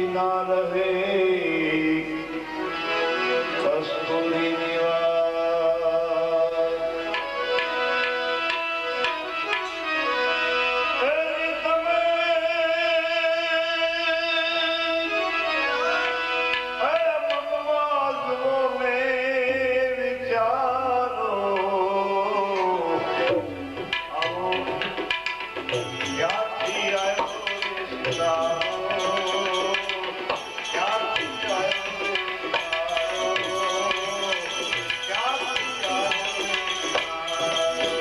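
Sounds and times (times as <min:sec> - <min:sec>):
tabla playing: 0:00.0 - 0:38.0.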